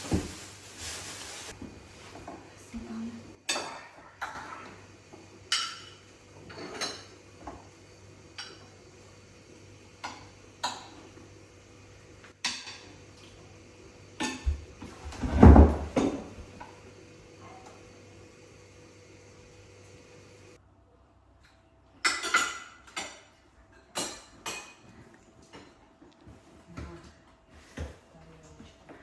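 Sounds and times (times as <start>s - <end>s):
dishes and cutlery clinking: 3.5s - 4.8s, 5.5s - 7.7s, 22.0s - 25.8s
dishes clattering: 5.5s - 7.6s, 22.0s - 24.9s.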